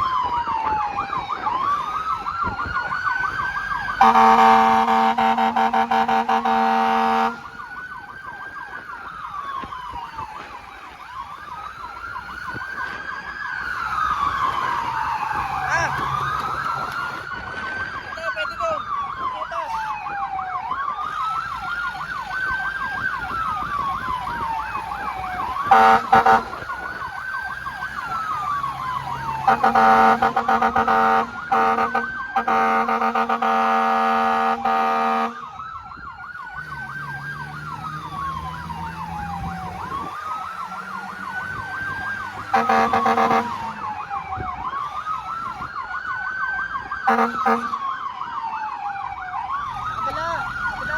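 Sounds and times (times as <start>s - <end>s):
electronic siren wailing: 0.0s - 50.9s
loud horn blasts: 4.0s - 7.4s, 25.6s - 26.6s, 29.5s - 35.4s, 42.5s - 43.8s, 47.1s - 47.8s.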